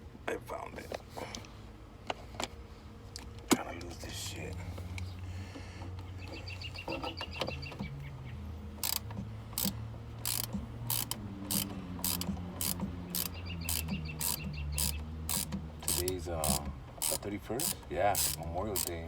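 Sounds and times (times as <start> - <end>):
ratchet wrench clicking: 8.8 - 19.0.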